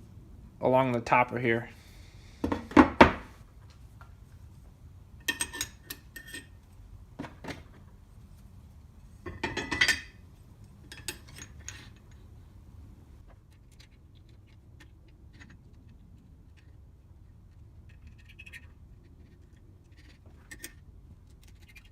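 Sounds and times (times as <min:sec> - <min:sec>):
metal parts clinking and knocking: 0:09.2 - 0:10.2, 0:10.8 - 0:12.2.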